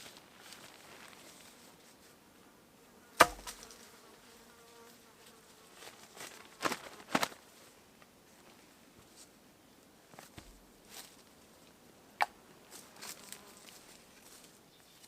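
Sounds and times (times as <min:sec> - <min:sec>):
flying insect buzzing: 0:02.8 - 0:06.4, 0:12.2 - 0:13.9
sharp knocks: 0:03.2 - 0:03.6.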